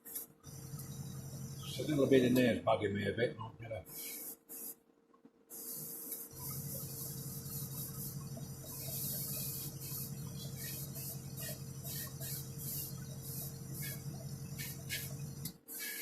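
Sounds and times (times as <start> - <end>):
compressor motor hum: 0.4 - 2.5, 6.3 - 15.6
airbrush spraying hiss: 3.9 - 4.8, 5.5 - 16.0.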